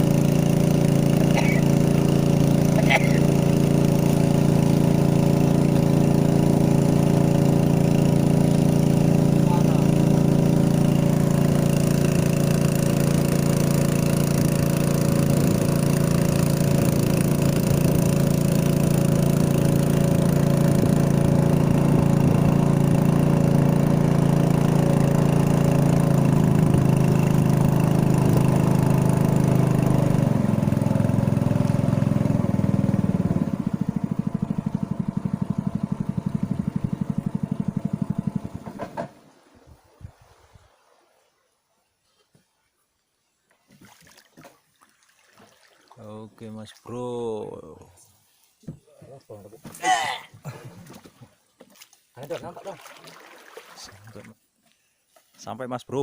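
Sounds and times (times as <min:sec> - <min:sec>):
small engine running: 0:00.0 - 0:39.2.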